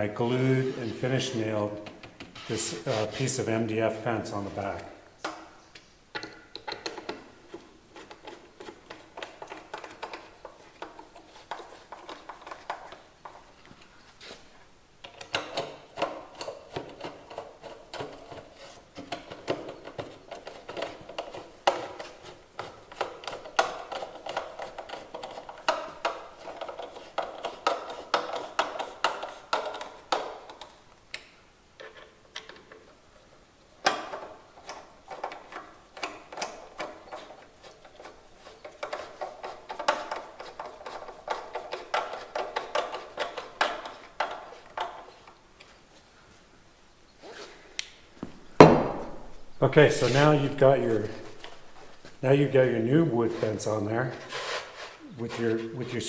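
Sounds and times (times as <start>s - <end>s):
hand tool knocks: 48.2s - 49.6s.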